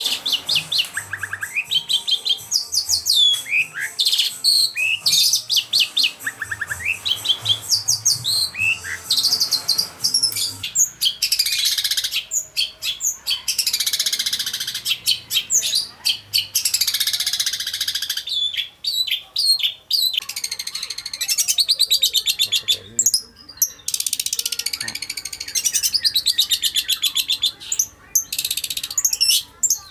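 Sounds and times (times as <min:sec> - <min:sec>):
harsh rapid bird rattling: 0:00.0 - 0:12.6
bird singing: 0:00.0 - 0:29.9.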